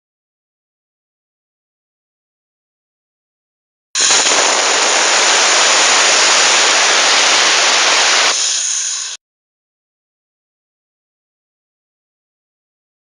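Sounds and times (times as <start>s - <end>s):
abrasive blasting air hiss: 4.0s - 9.2s.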